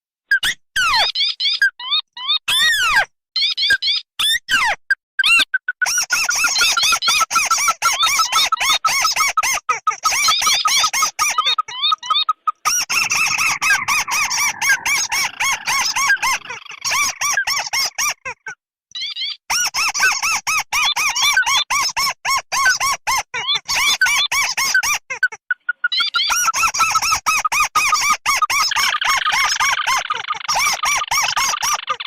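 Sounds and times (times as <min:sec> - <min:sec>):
crake calls squeaky notes: 0:05.2 - 0:18.4.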